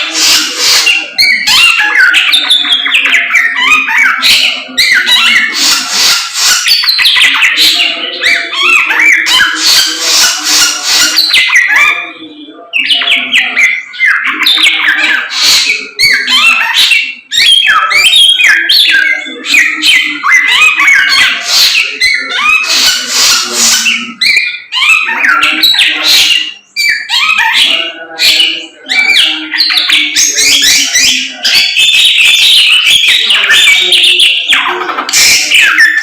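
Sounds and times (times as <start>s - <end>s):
caged bird singing whistled phrases: 3.4s - 11.7s.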